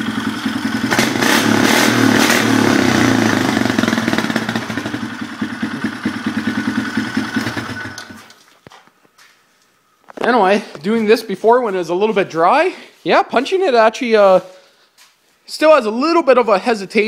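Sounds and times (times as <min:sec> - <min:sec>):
engine revving and idling: 0:00.0 - 0:08.3.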